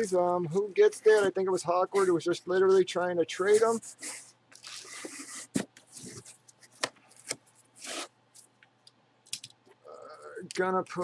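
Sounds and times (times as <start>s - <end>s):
rubbing and rustling: 0.5s - 8.6s.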